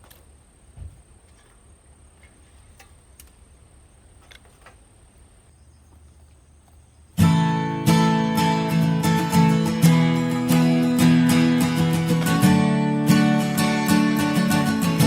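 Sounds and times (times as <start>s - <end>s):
strummed acoustic guitar: 7.2s - 15.0s.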